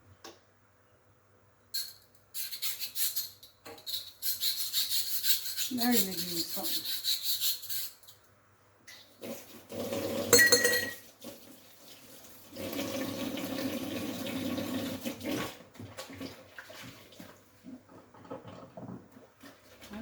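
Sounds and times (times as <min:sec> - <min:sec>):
tap water running into sink: 0:09.2 - 0:19.8
dishes clattering: 0:10.3 - 0:11.0.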